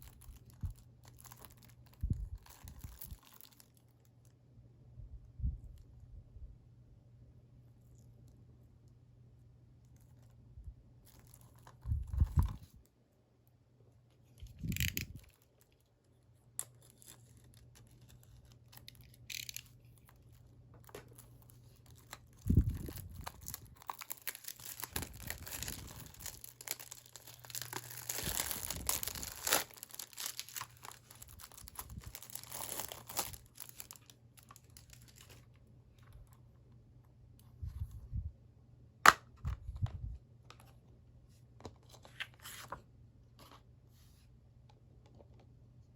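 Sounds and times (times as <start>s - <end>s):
shrink-wrap tearing and crinkling: 0.0s - 4.0s, 11.0s - 12.6s, 14.5s - 15.9s, 16.6s - 35.5s.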